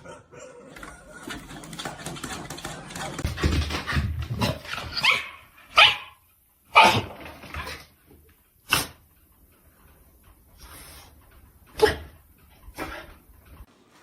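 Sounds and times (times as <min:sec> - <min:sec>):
dog barking: 0:05.0 - 0:07.1.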